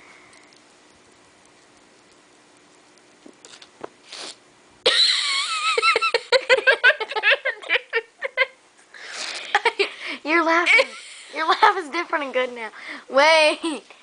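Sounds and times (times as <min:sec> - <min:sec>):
girl laughing high-pitched: 0:04.9 - 0:08.6, 0:10.6 - 0:11.5.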